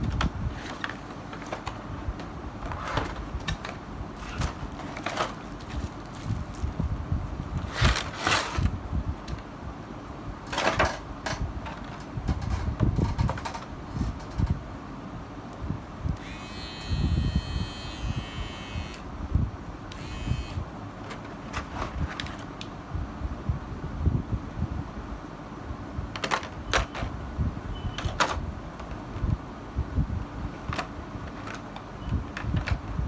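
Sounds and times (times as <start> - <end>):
box and plastic handling noises: 0.0 - 6.9, 7.5 - 9.4, 21.0 - 22.7, 26.2 - 27.2, 28.0 - 29.3, 30.6 - 33.0.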